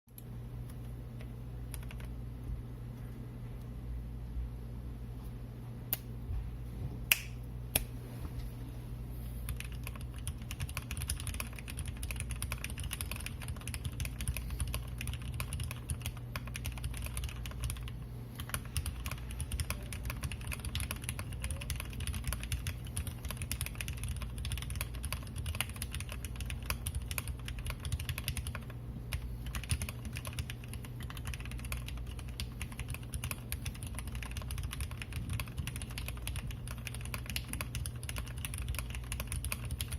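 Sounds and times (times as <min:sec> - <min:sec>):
fast mechanical keyboard typing: 0:01.6 - 0:02.2, 0:09.5 - 0:39.9.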